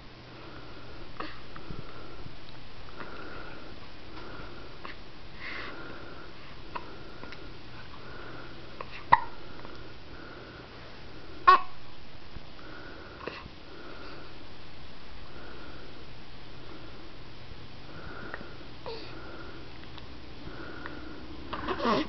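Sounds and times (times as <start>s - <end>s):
baby hiccupping: 9.0s - 9.4s, 11.5s - 11.8s, 21.5s - 22.0s.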